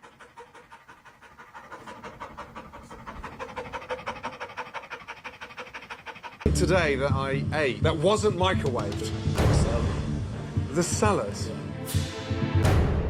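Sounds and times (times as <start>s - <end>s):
dog panting rapidly: 0.0s - 7.2s.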